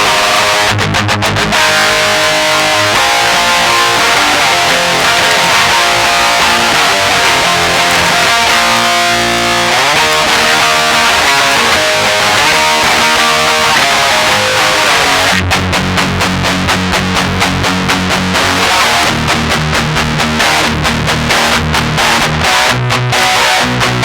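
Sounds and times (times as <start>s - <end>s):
distorted electric guitar strumming: 0.0s - 24.0s.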